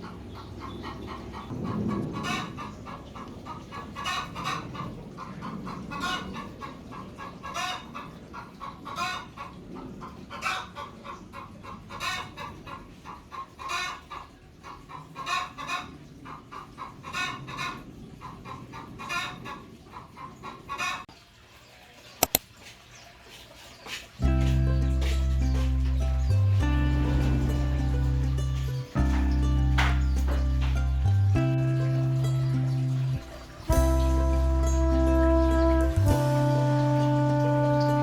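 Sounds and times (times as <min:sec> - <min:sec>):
chickens clucking: 0:00.0 - 0:21.3, 0:22.1 - 0:38.0
sharp clicks: 0:22.2 - 0:22.5
low background rumble: 0:24.2 - 0:38.0.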